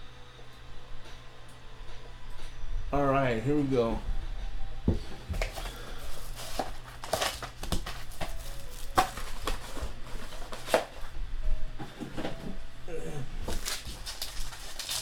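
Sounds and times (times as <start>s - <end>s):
plastic wrapping crinkling and tearing: 5.4s - 11.1s, 13.4s - 15.0s.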